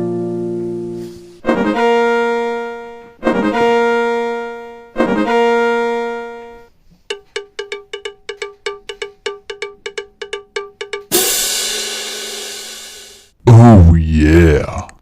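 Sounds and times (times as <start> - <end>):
playful cartoon music: 0.0 - 11.8
short repeated struck notes: 7.1 - 13.2.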